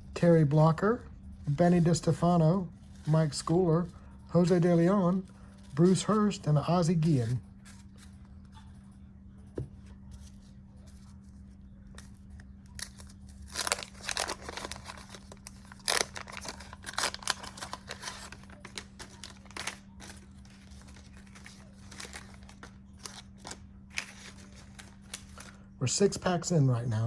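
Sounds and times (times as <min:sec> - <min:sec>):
faint steady hum: 0:00.0 - 0:27.0
wax paper wrapper tearing and crinkling: 0:12.0 - 0:25.6.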